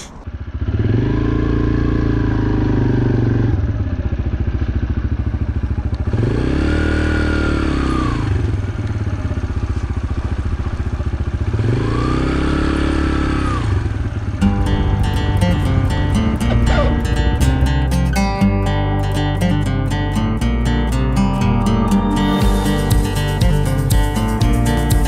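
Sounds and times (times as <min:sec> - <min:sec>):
dirt bike engine revving: 0:00.0 - 0:03.6, 0:06.0 - 0:08.6, 0:11.4 - 0:19.7.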